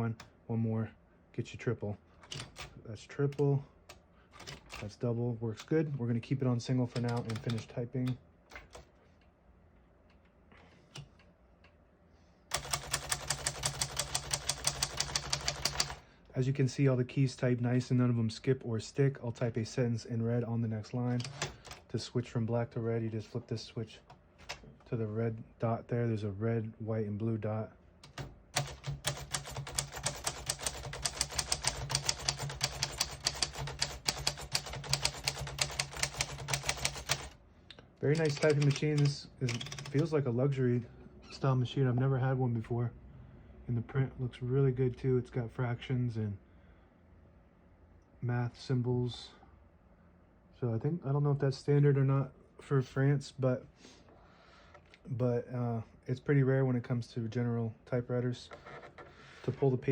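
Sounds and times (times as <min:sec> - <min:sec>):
typewriter keys clacking: 0:06.9 - 0:07.7, 0:12.5 - 0:16.0, 0:21.2 - 0:21.8, 0:28.0 - 0:37.3, 0:38.1 - 0:40.1.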